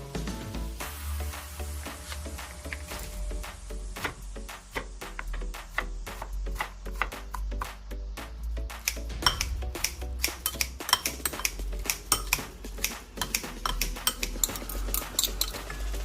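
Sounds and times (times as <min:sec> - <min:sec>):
cutlery and dishes clinking: 0:10.3 - 0:12.5, 0:13.2 - 0:15.8.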